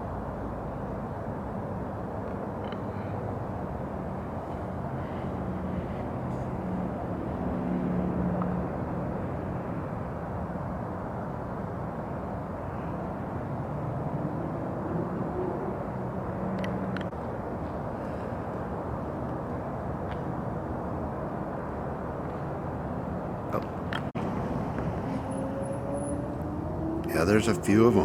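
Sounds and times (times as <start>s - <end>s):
vehicle engine rumbling: 23.4s - 28.0s.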